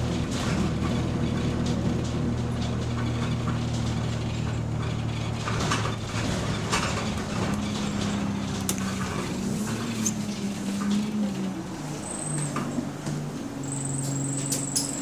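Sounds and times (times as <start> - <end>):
bus engine drone: 0.0 - 15.0.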